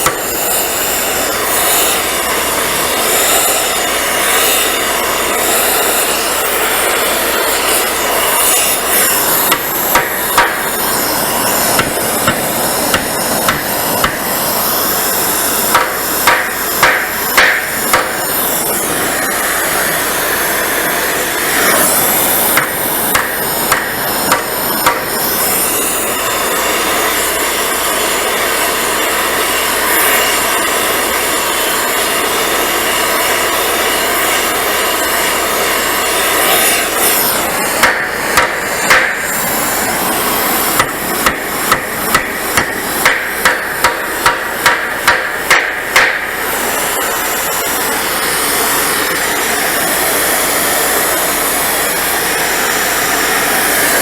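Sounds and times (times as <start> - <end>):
hammer striking metal: 0.0 - 1.0, 7.5 - 14.8, 15.4 - 18.8, 21.5 - 25.2, 37.8 - 39.5, 40.2 - 46.4
steady rushing hiss: 0.0 - 54.0.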